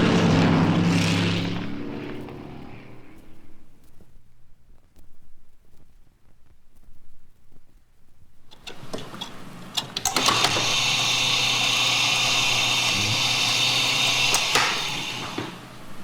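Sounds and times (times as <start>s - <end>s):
machine humming and whirring: 8.6s - 16.0s.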